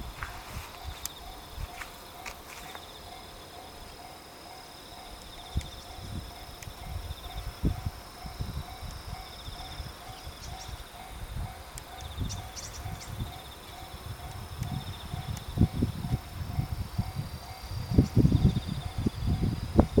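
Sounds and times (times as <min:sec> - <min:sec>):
insects trilling: 0:00.0 - 0:20.0
level-crossing warning bell: 0:00.0 - 0:20.0.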